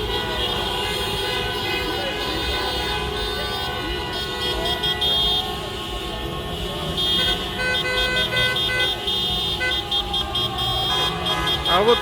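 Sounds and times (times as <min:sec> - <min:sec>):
car horns honking: 0:00.0 - 0:12.0
street traffic noise: 0:00.0 - 0:12.0.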